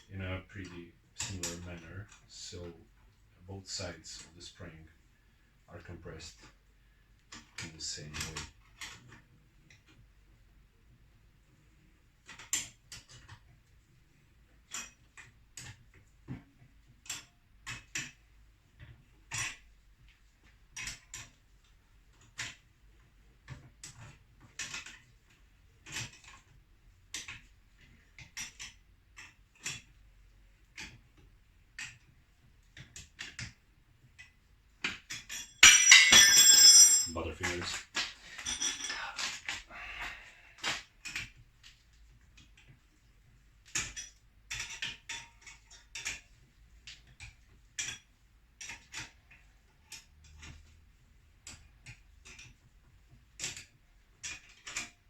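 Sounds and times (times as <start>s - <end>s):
spanner clinking against nuts: 35.1s - 37.6s, 38.3s - 39.3s
metal tool dropped clattering: 35.6s - 37.6s, 38.4s - 39.0s.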